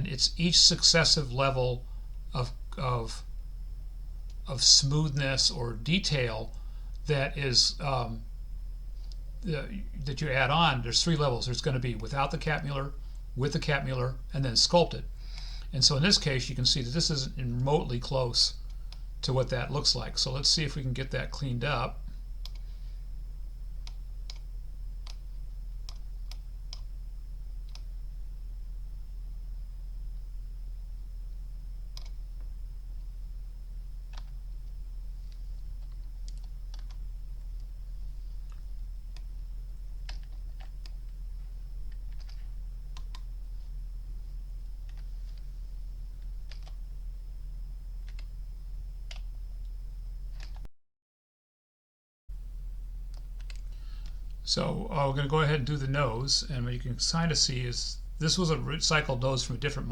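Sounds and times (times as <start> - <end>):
faint high whine: 0.0 - 50.6, 52.3 - 59.9
low electrical hum: 0.0 - 50.7, 52.3 - 59.9
keyboard and mouse clicks: 35.3 - 37.0, 41.9 - 43.2, 46.5 - 46.8, 50.3 - 50.7.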